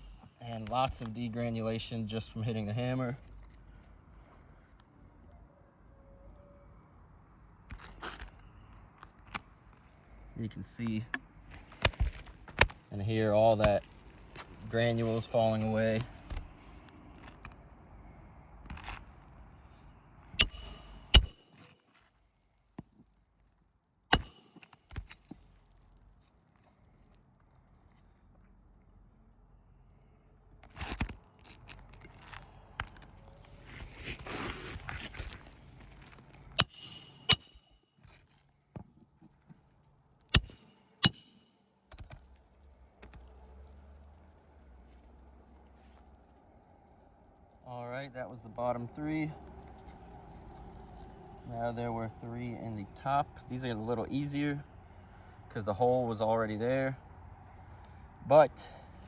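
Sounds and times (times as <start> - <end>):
hammer striking metal: 20.4 - 21.8, 24.1 - 25.0, 36.6 - 37.8, 40.4 - 41.5.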